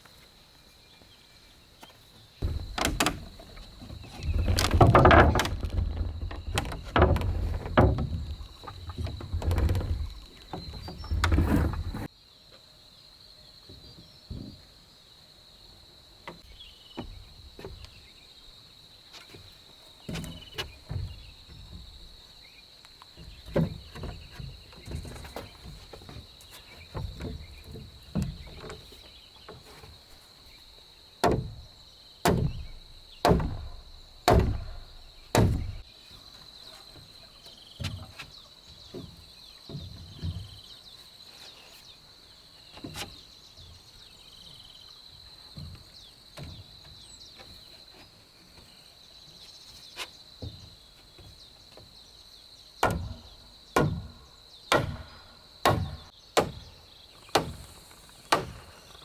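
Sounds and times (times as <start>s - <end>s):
heavy blows on wood: 2.4s - 12.1s, 32.3s - 35.8s
knocks and thuds on timber: 2.4s - 12.1s, 13.7s - 14.7s, 16.2s - 18.1s, 19.2s - 22.3s, 23.1s - 30.0s, 31.2s - 35.9s, 37.8s - 40.7s, 45.4s - 48.0s, 50.4s - 51.9s, 52.8s - 58.9s.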